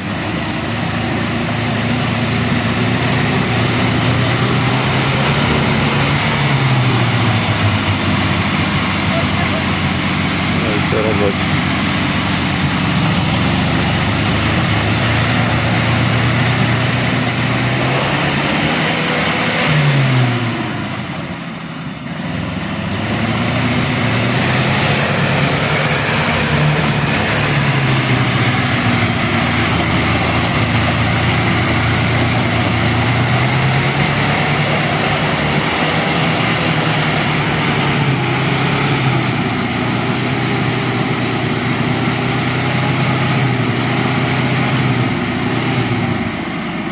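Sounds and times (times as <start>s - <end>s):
vehicle engine revving: 0.0s - 46.9s.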